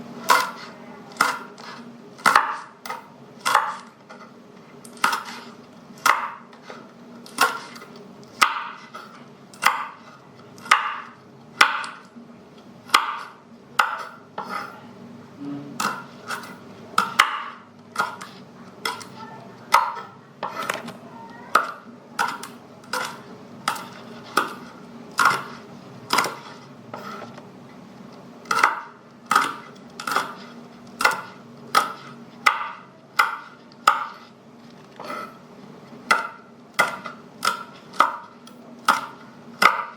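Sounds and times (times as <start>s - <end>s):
knife tapping cutting board: 31.0s - 34.2s.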